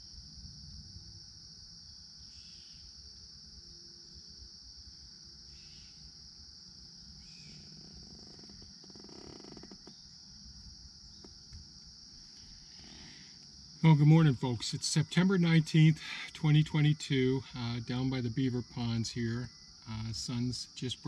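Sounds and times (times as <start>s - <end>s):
crickets trilling: 0.0s - 21.0s
short insect chirps: 2.2s - 4.2s, 5.3s - 16.2s.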